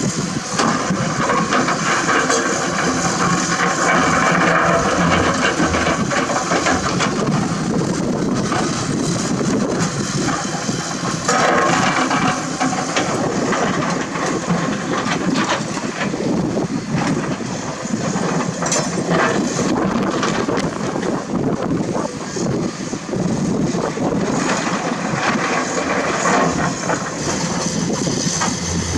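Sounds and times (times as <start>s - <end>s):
excavator diesel engine: 0.0s - 28.9s
bucket scraping rock: 1.2s - 9.2s, 25.4s - 28.9s.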